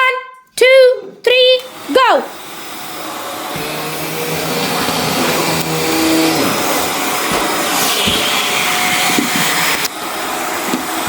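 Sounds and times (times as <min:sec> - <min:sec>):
vacuum cleaner running: 0:01.4 - 0:11.0.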